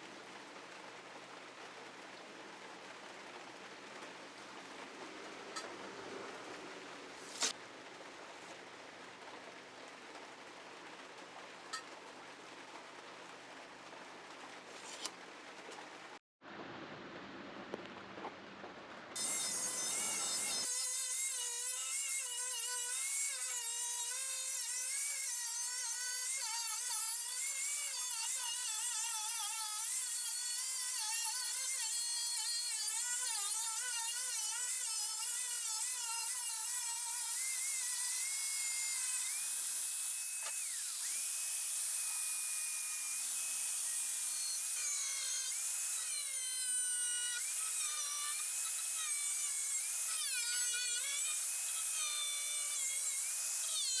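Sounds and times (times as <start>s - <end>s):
angle grinder cutting steel: 7.2s - 7.6s, 19.2s - 54.0s.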